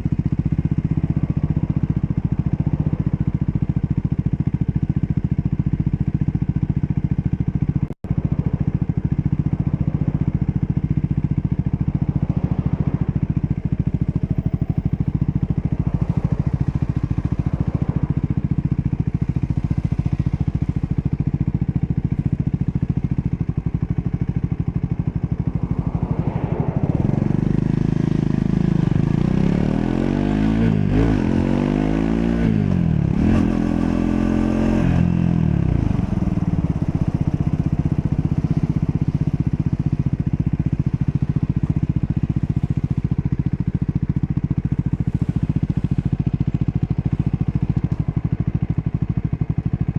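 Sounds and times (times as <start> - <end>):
motorcycle engine revving: 0.0 - 49.9.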